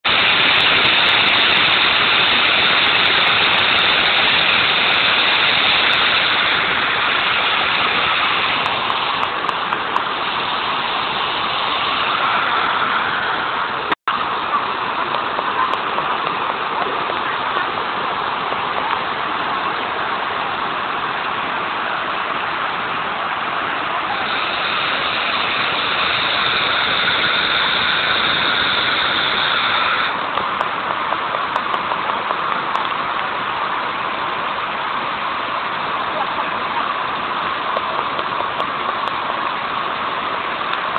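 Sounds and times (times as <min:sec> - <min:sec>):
waterfall roaring: 0:00.0 - 0:40.9.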